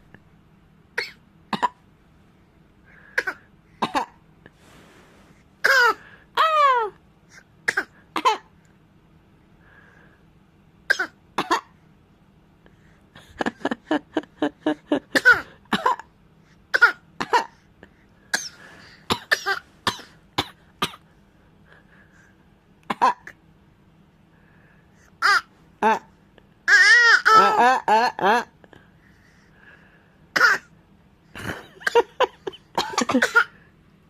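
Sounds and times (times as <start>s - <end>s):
playful coughs: 3.2s - 4.2s, 5.6s - 6.0s, 7.7s - 8.5s, 10.9s - 11.8s, 15.0s - 16.1s, 16.7s - 17.6s, 18.4s - 21.0s, 22.8s - 23.4s, 30.4s - 30.7s, 31.4s - 33.6s.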